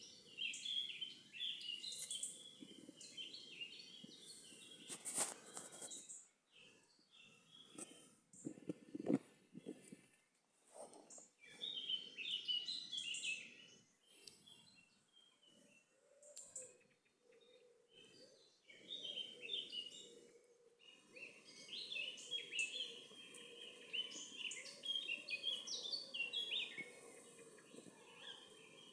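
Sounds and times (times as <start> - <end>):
songbirds twittering: 0.0 - 10.3, 10.9 - 28.9.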